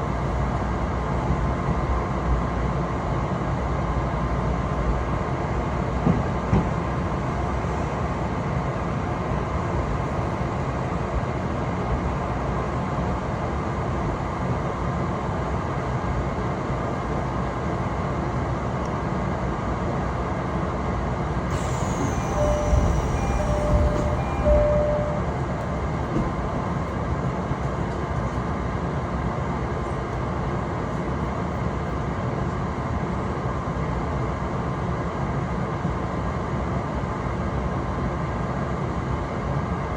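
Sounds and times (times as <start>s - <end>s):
train rumbling on rails: 0.0s - 39.9s
high squeal falling in pitch: 21.5s - 25.4s
short beeps: 21.5s - 25.9s.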